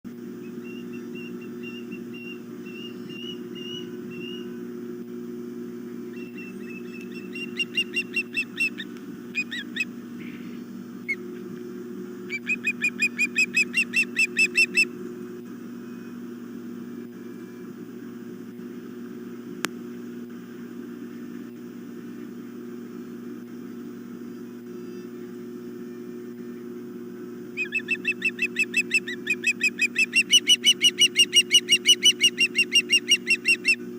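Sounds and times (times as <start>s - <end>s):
steady low hum: 0.1s - 33.9s
shrill whistled bird chirps: 0.4s - 4.5s, 6.1s - 9.9s, 12.3s - 14.9s, 27.6s - 33.8s.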